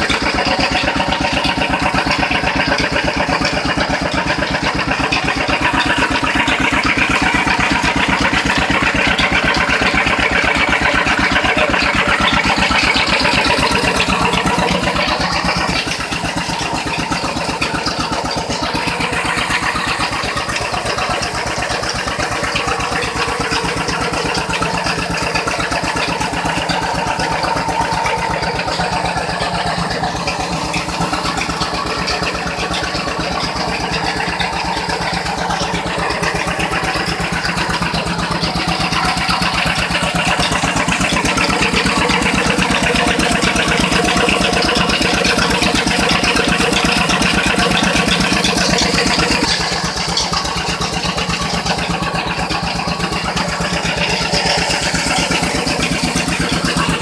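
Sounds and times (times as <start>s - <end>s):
rice mill machinery running: 0.0s - 57.0s.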